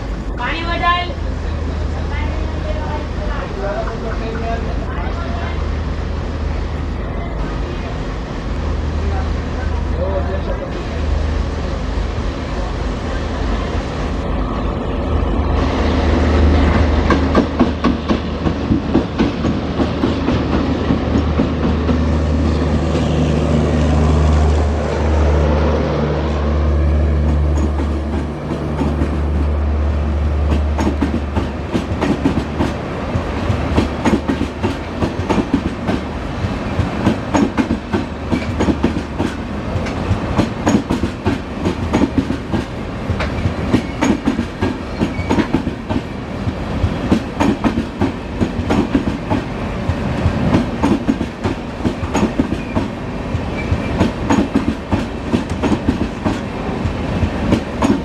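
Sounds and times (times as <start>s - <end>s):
diesel locomotive drone: 0.0s - 58.0s
train wheels clattering over rail joints: 30.5s - 58.0s.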